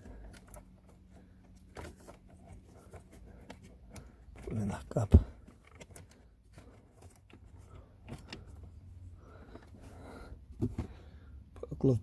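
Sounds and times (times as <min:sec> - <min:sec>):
wiring rustling and clicking: 0:00.0 - 0:08.8
low steady hum: 0:00.0 - 0:12.0.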